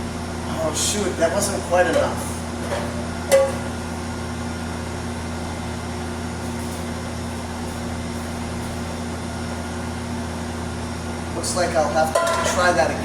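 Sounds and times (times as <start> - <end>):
low machine hum: 0.0 - 13.0.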